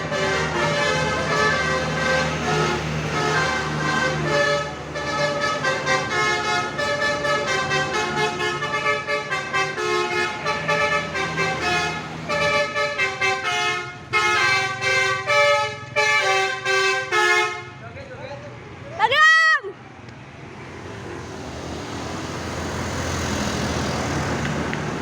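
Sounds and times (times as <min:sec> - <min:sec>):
multi-tone musical horn: 0:00.0 - 0:17.8.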